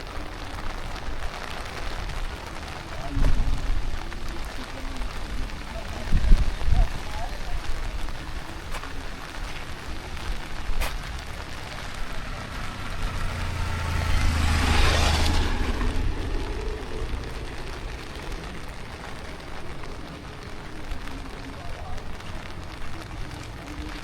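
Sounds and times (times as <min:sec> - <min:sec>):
vehicle passing by: 0:11.2 - 0:19.2.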